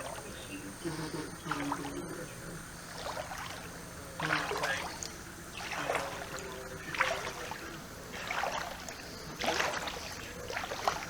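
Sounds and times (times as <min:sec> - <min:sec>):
splashing in water: 0:02.8 - 0:11.0.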